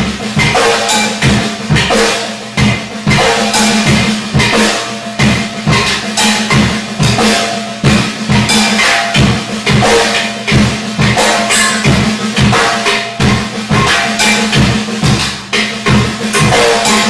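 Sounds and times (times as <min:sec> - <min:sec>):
crashing percussion hits: 0:00.0 - 0:17.0.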